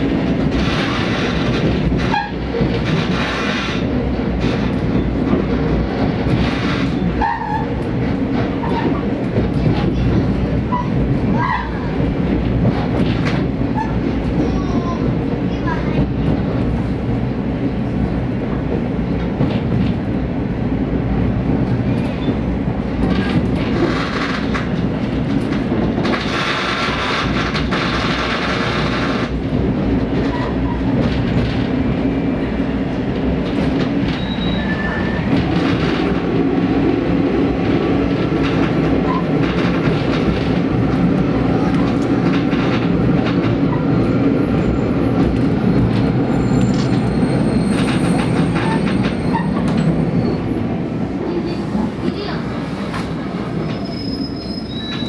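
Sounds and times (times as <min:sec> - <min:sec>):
diesel railcar running: 0:00.0 - 0:55.0.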